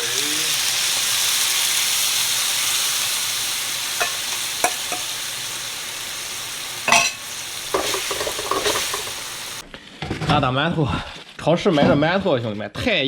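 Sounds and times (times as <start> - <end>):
tofu sizzling in frying pan: 0.0 - 9.6.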